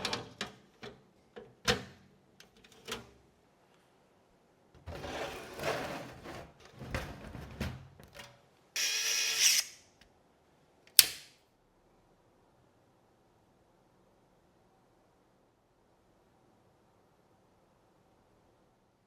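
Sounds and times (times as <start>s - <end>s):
sharp click: 10.9s - 11.4s.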